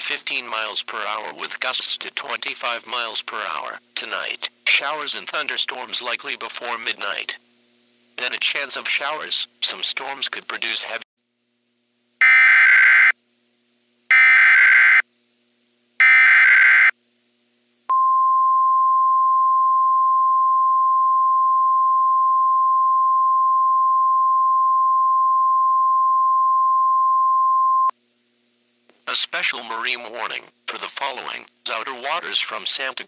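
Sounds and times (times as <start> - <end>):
steady high warning tone: 12.2 - 13.2, 14.1 - 15.0, 16.0 - 16.9
screeching digital data tones: 14.1 - 15.0, 16.0 - 16.9.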